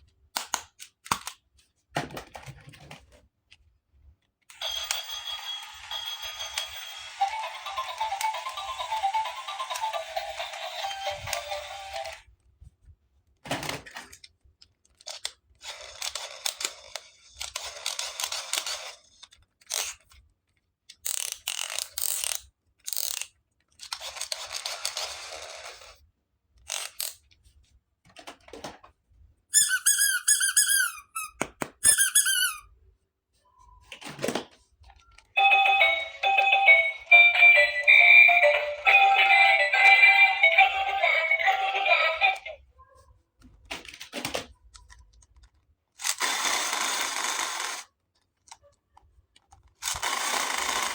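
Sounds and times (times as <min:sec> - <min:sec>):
short high squeaks: 0:29.6 - 0:32.7.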